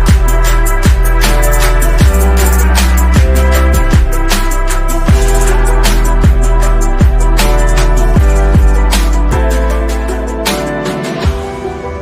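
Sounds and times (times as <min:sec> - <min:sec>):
heavy bass line: 0:00.0 - 0:11.4
kick drum beat: 0:02.0 - 0:02.3, 0:03.2 - 0:04.2, 0:06.2 - 0:07.3, 0:08.2 - 0:09.5.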